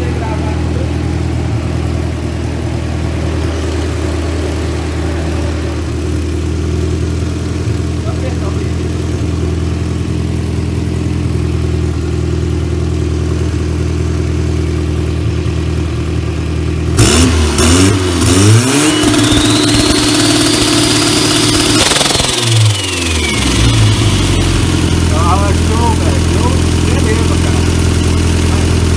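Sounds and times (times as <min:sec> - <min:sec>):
car engine idling and revving: 0:00.0 - 0:28.9
turbo whistle: 0:18.8 - 0:20.9.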